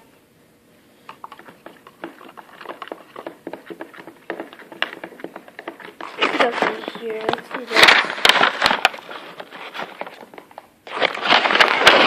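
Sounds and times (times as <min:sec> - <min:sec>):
slime squelching and tapping: 0:01.1 - 0:07.5.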